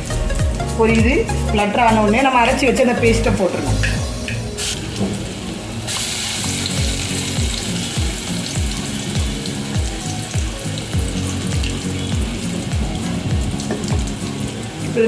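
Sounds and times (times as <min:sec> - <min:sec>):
music with low beat: 0:00.0 - 0:05.3, 0:06.2 - 0:15.0
oil sizzling in a pan: 0:03.2 - 0:15.0.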